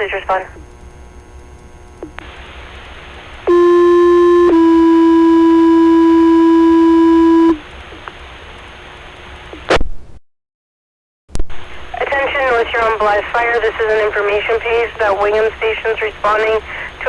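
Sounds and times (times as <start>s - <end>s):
radio hiss: 0.0s - 0.6s, 2.2s - 3.5s, 11.5s - 17.0s
two-tone paging tones: 3.5s - 7.6s.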